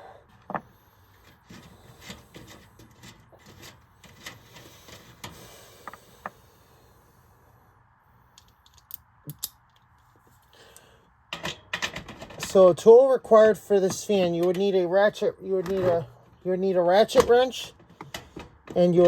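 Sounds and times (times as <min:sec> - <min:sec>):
light scraping of tools: 0:00.3 - 0:06.3
tools clicking on metal parts: 0:08.4 - 0:09.8.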